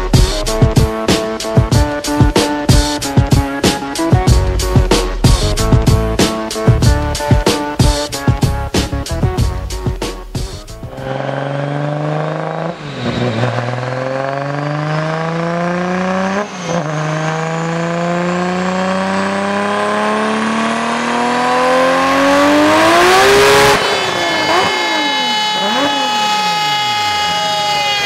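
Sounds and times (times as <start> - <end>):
car engine revving on dyno: 10.8 - 28.0.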